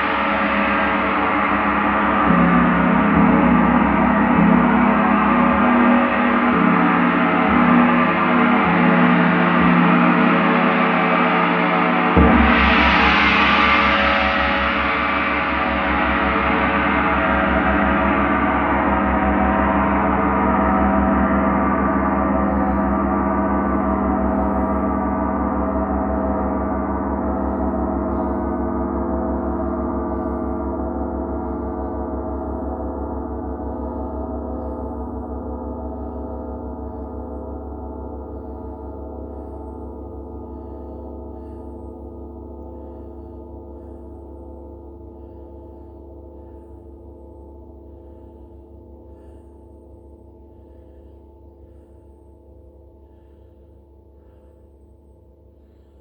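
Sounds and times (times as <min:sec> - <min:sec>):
large gong ringing: 0:00.0 - 0:38.7.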